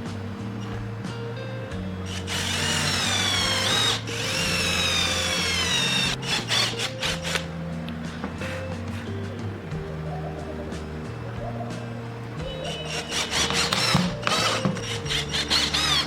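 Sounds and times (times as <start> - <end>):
background music: 0.0 - 16.0
electric drill whining: 1.8 - 7.5, 12.7 - 16.0.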